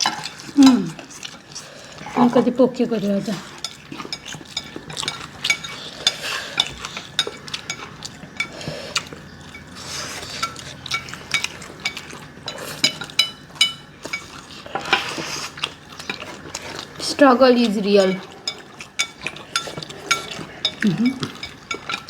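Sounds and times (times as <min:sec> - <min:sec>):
forks clinking on plates: 0:03.6 - 0:15.2, 0:17.6 - 0:22.0.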